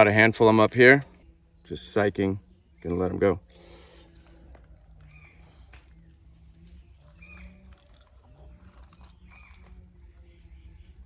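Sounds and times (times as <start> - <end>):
rustling among leaves and rock: 3.6 - 11.0
animal chirping: 5.0 - 5.8, 7.0 - 9.9.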